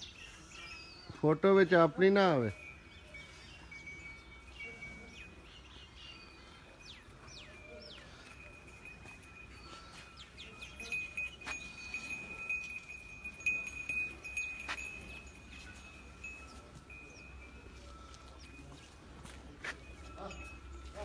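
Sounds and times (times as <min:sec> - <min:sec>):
birds chirping: 0:00.0 - 0:21.0
high ringing tone: 0:07.0 - 0:21.0.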